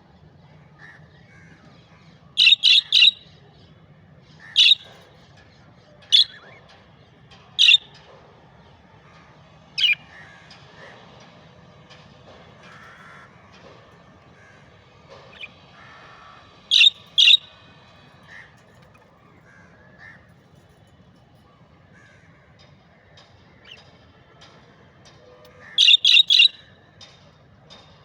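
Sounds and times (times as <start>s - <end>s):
budgerigars chirping softly: 2.4s - 3.2s, 4.6s - 5.0s, 6.1s - 6.6s, 7.6s - 7.9s, 9.8s - 10.0s, 16.7s - 17.6s, 25.8s - 26.6s
budgerigars screeching: 2.4s - 3.2s, 4.6s - 4.9s, 7.6s - 7.8s, 16.7s - 17.5s, 25.7s - 26.6s.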